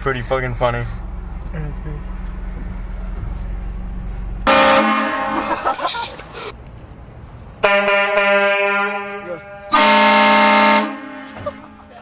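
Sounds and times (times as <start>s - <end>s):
low engine hum: 0.0s - 7.6s
train horn blasts: 4.4s - 5.4s, 7.6s - 11.4s.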